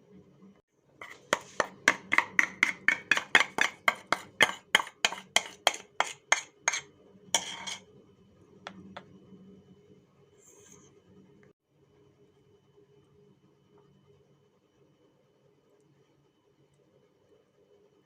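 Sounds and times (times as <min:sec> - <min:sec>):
utensil knocking on hard surface: 0:01.0 - 0:06.8.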